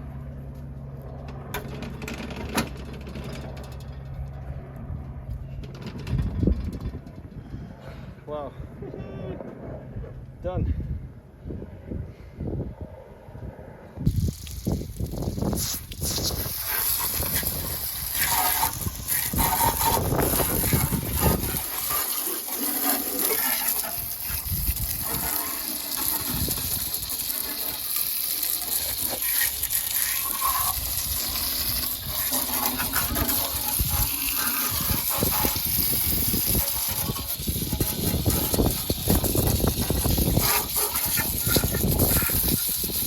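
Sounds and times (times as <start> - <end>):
water spraying from a hose: 14.1 - 43.0.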